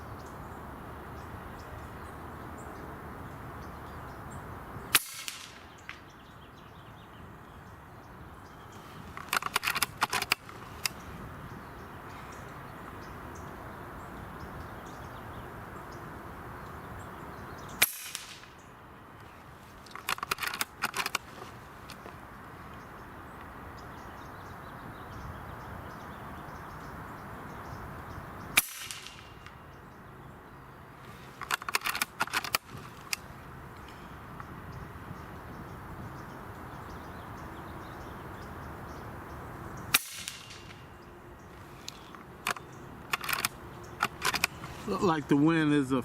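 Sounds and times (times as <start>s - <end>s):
air rifle shots: 4.9s - 6.0s, 17.8s - 18.6s, 28.6s - 29.6s, 39.9s - 40.9s
rifle action clicks: 9.2s - 11.0s, 19.9s - 21.3s, 41.9s - 44.6s.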